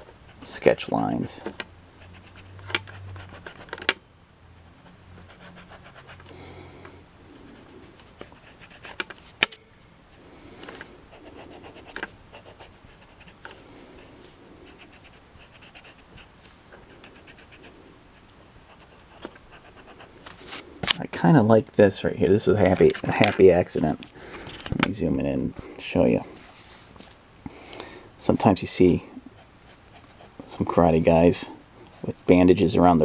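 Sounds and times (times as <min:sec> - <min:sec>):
eraser and pencil on paper: 0:02.0 - 0:03.8, 0:04.9 - 0:06.2, 0:08.2 - 0:09.0, 0:11.2 - 0:13.5, 0:14.7 - 0:20.6.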